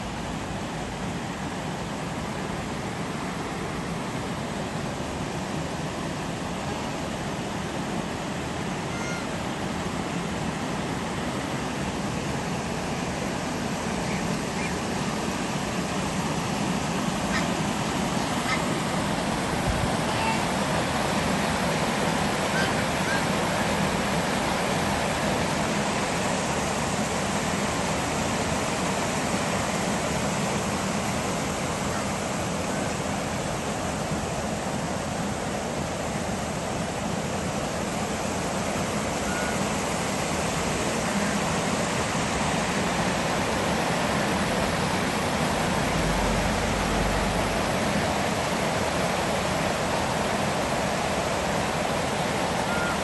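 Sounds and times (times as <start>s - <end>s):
rushing water: 0.0s - 53.0s
faint bird calls: 8.8s - 9.4s, 14.0s - 15.2s, 17.2s - 17.6s, 18.2s - 18.8s, 20.0s - 20.5s, 22.5s - 23.7s, 39.2s - 39.7s, 52.6s - 53.0s.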